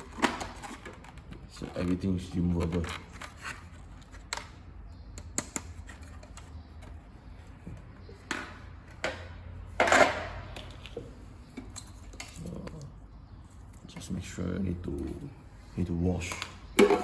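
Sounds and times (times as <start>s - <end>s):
juicer parts clicking and clattering: 0.0s - 3.3s.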